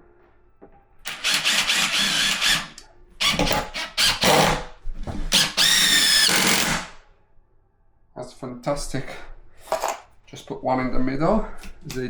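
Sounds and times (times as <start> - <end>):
power drill driving screws: 1.1 - 4.6, 5.3 - 6.9.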